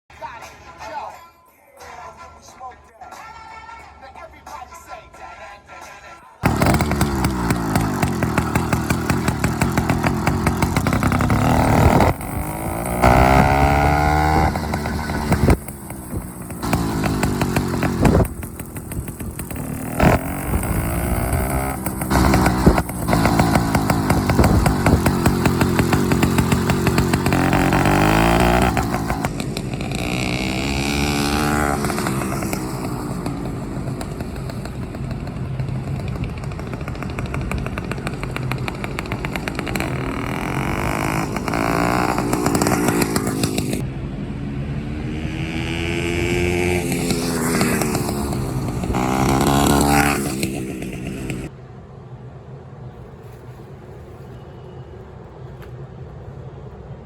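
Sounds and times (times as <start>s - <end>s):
two-stroke engine revving: 6.4s - 51.5s.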